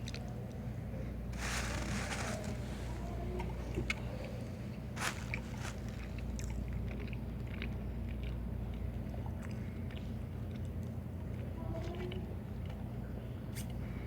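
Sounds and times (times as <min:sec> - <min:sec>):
steady low hum: 0:00.0 - 0:11.6
small wet clicks and crackles: 0:00.0 - 0:13.9.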